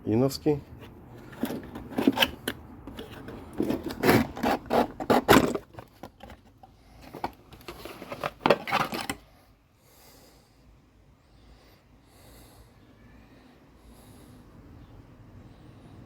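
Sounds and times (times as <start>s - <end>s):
parts being handled: 0.6s - 9.3s.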